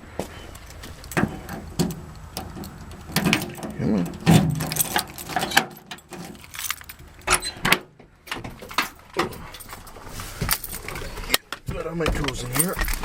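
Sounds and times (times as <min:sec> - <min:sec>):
keys jingling: 0:00.6 - 0:07.6, 0:10.5 - 0:11.2, 0:12.2 - 0:13.0
truck door clunks and clicks: 0:00.7 - 0:09.4.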